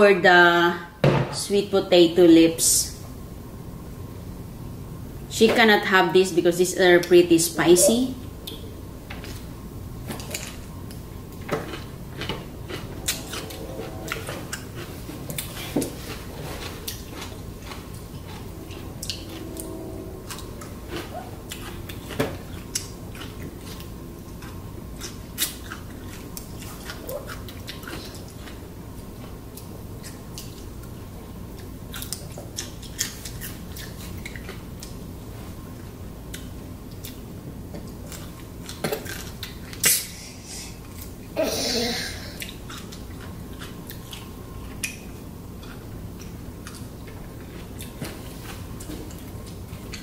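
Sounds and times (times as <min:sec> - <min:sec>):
chewing: 0:10.2 - 0:28.7, 0:29.5 - 0:35.0, 0:42.4 - 0:50.0.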